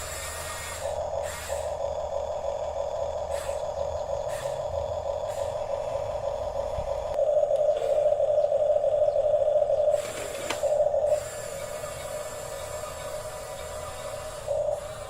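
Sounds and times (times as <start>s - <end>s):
toy electric motors whirring: 0.0s - 2.4s, 3.2s - 5.7s, 9.9s - 15.0s.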